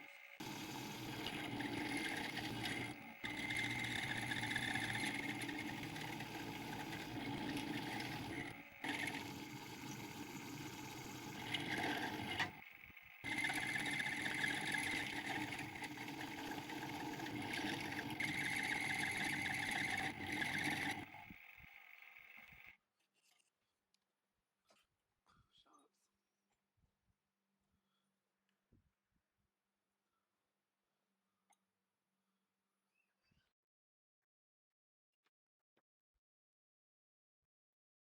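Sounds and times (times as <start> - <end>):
benchtop machine tool motor running: 0.0 - 22.7.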